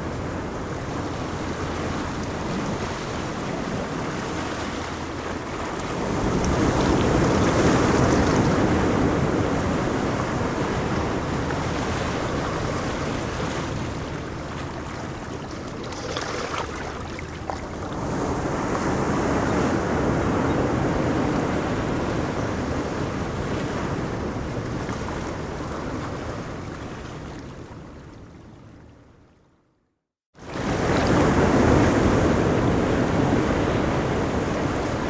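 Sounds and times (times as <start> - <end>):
ocean surf washing onto beach: 0.0 - 26.6, 30.4 - 35.0.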